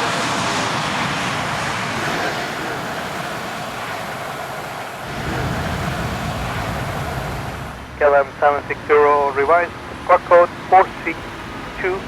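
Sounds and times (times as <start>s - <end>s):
jet engines at takeoff: 0.0s - 12.0s.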